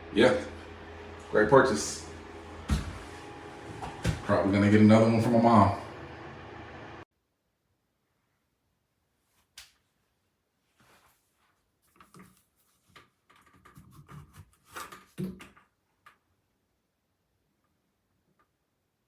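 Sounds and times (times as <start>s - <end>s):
faint clicks knocks and rustles: 11.9s - 16.2s.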